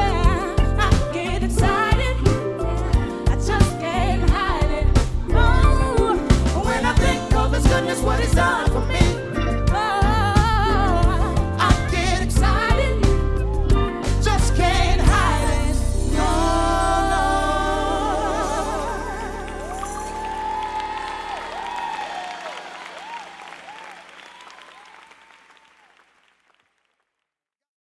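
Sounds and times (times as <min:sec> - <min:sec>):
band with heavy bass: 0:00.0 - 0:22.0
gospel singing: 0:00.0 - 0:22.5.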